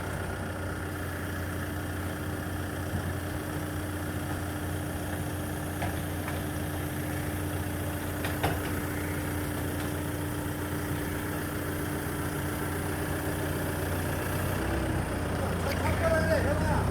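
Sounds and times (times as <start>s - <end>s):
engine idling: 0.0s - 16.9s
short engine knocks: 5.1s - 6.7s, 8.0s - 10.2s.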